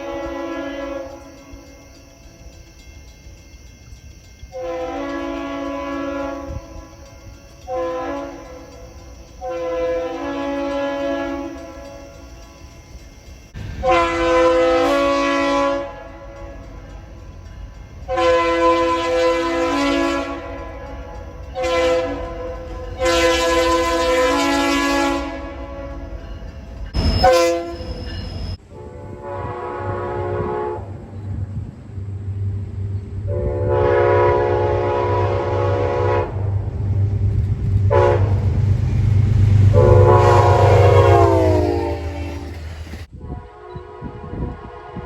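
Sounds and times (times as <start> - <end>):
locomotive air horn blasts: 0.0 - 1.7, 4.5 - 7.0, 7.6 - 12.2, 13.6 - 17.1, 18.1 - 26.2, 27.0 - 27.9, 28.7 - 31.1, 33.3 - 36.7, 37.8 - 45.0.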